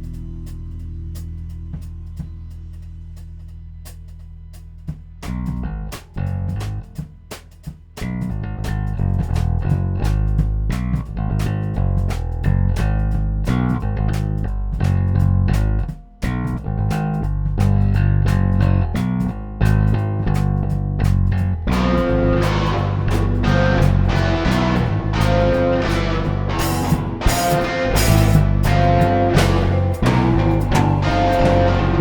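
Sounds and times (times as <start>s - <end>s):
bass guitar: 0.0s - 32.0s
drum kit: 0.0s - 32.0s
electric guitar: 21.7s - 32.0s.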